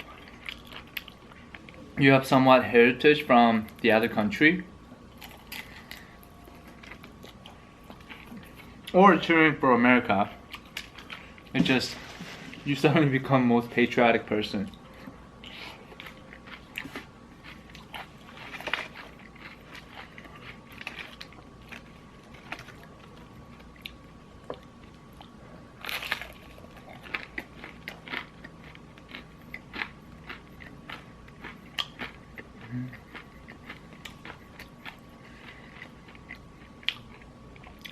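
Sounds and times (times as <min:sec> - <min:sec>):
chewing crispy fried chicken: 0:00.0 - 0:01.9, 0:05.1 - 0:09.0, 0:14.6 - 0:37.9.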